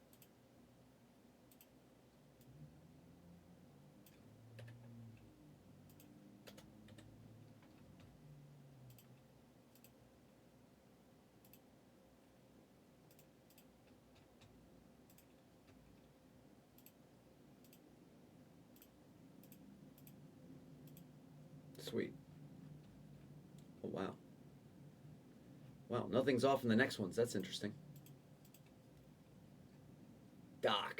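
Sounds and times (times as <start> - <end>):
computer keys clicking: 0.0 - 0.4, 1.5 - 1.8, 4.0 - 4.9, 5.8 - 8.2, 8.8 - 10.0, 11.4 - 11.7, 13.1 - 16.1, 16.7 - 17.0, 17.6 - 17.9, 18.7 - 20.2, 20.8 - 21.1, 27.4 - 29.1.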